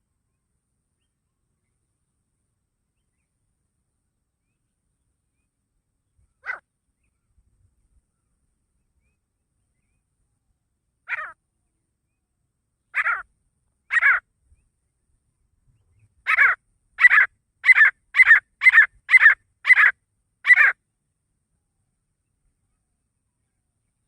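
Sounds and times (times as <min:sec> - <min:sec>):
francolin calling: 0:11.0 - 0:11.4, 0:12.9 - 0:14.3, 0:15.9 - 0:20.8.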